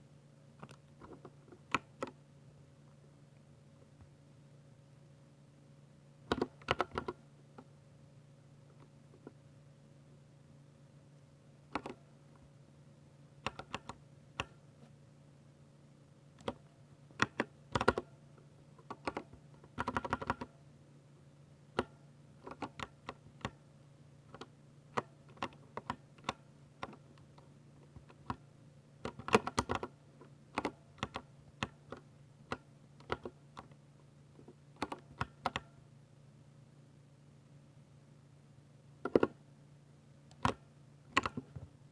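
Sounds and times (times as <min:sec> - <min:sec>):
faint low hum: 0:00.0 - 0:41.9
mechanical keyboard typing: 0:06.3 - 0:07.2, 0:11.7 - 0:12.0, 0:13.4 - 0:14.6, 0:16.4 - 0:16.6, 0:17.2 - 0:18.1, 0:18.8 - 0:20.5, 0:21.8 - 0:23.6, 0:24.3 - 0:27.0, 0:29.0 - 0:33.7, 0:34.8 - 0:35.7, 0:39.0 - 0:39.4, 0:40.4 - 0:41.6.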